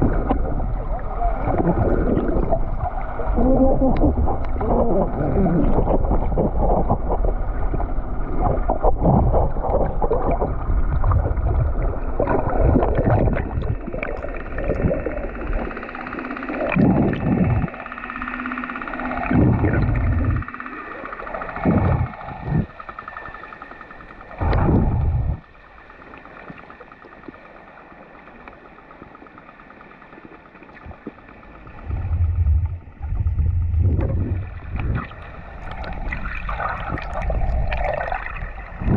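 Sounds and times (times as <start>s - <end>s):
wind gusting on microphone: 31.8s - 35.2s.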